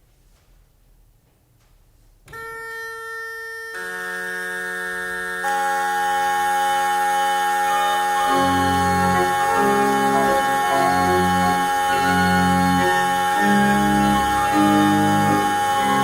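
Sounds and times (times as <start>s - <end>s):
organ playing: 3.8s - 16.0s.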